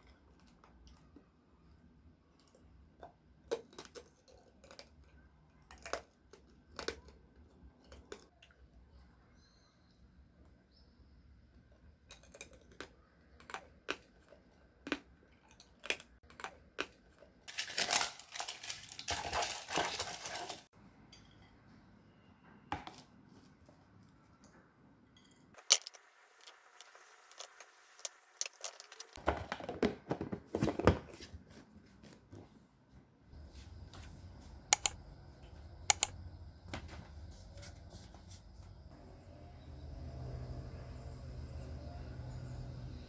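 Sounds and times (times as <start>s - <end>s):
crinkling and rustling: 16.8s - 20.7s, 25.6s - 35.0s
small clicks and taps: 34.8s - 35.0s, 35.9s - 36.2s.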